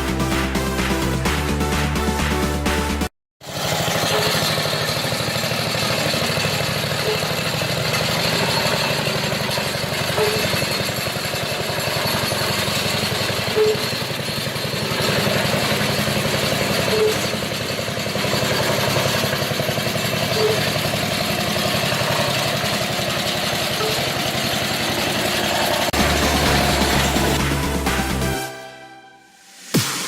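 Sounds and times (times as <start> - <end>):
music: 0.0 - 3.1, 26.0 - 30.0
tractor diesel engine idling: 3.4 - 28.5.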